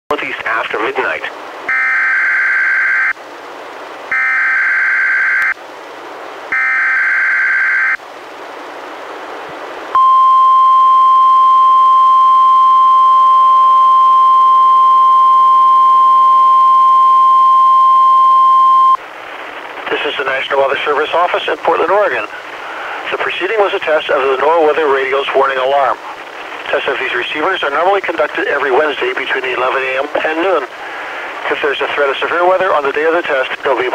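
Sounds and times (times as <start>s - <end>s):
radio hiss: 0.1s - 1.8s, 12.8s - 33.9s
steady warning alarm tone: 1.7s - 3.2s, 4.1s - 5.6s, 6.5s - 8.0s.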